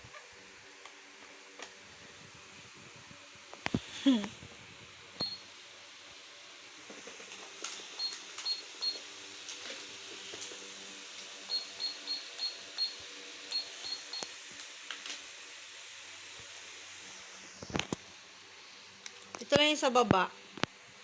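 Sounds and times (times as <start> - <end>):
toy keypad beeping: 8.0 - 9.0, 11.5 - 14.3.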